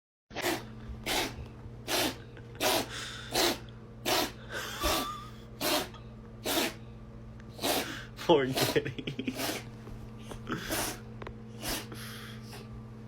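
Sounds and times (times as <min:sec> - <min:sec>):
cat sneezing: 0:00.3 - 0:06.8, 0:07.5 - 0:09.7, 0:10.6 - 0:11.0, 0:11.6 - 0:11.9.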